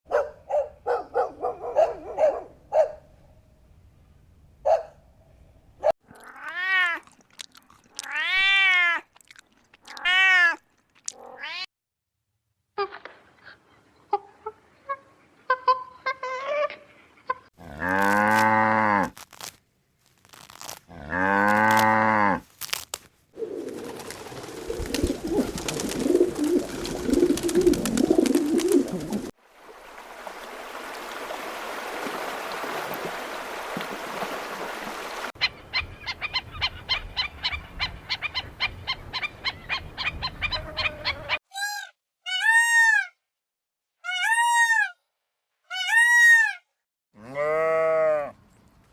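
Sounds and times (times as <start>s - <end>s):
cow mooing: 17.6s - 19.1s, 20.9s - 22.4s, 47.2s - 48.3s
noisy rustling: 17.9s - 29.3s.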